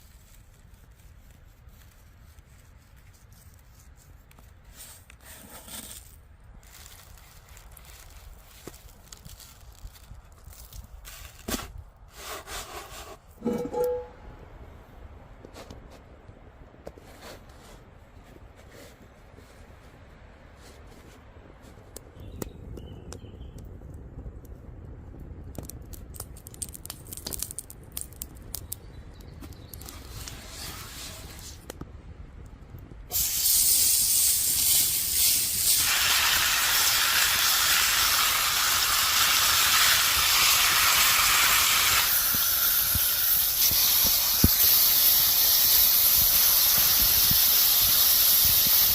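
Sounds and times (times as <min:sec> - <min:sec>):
faint clicks and rustles: 0:00.0 - 0:11.9
loud steady hiss: 0:33.1 - 0:48.9.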